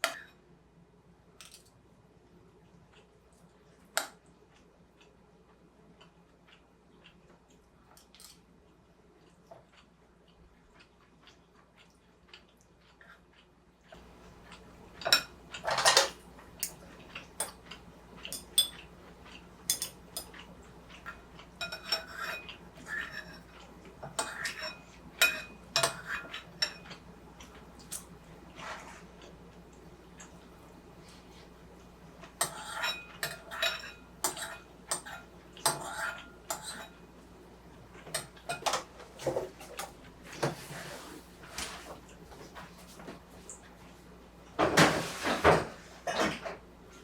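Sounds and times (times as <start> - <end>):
utensils clinking against dishes: 15.0 - 16.8, 17.4 - 18.9, 19.7 - 27.0, 32.4 - 37.0, 38.1 - 39.9.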